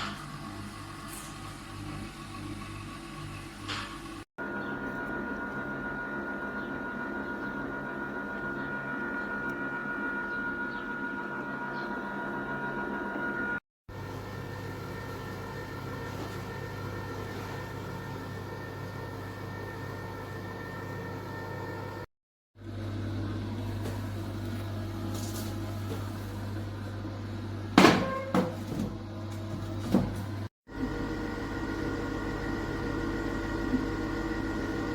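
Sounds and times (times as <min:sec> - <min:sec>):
ice cream maker motor humming: 0:00.0 - 0:27.8, 0:29.0 - 0:34.9.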